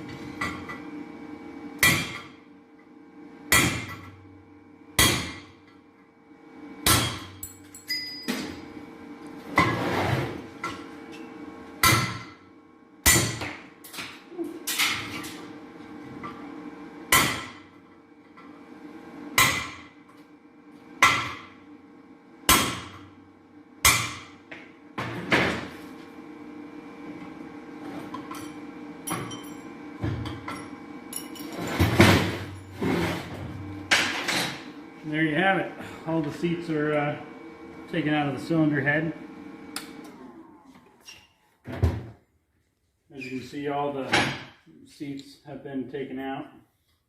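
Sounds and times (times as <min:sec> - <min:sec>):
hammer striking metal: 0:03.5 - 0:04.1, 0:05.0 - 0:05.5, 0:06.8 - 0:08.2, 0:13.1 - 0:13.6, 0:17.1 - 0:17.6, 0:22.5 - 0:23.0, 0:23.8 - 0:24.3.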